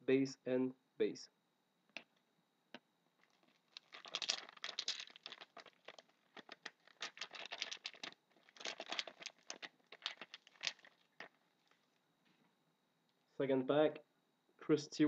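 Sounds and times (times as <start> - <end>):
foil wrapper tearing and crinkling: 3.2 - 11.8.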